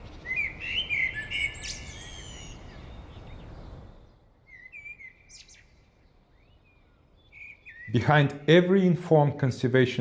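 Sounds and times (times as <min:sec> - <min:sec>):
birds chirping and whistling: 0:00.0 - 0:05.8, 0:06.4 - 0:08.3.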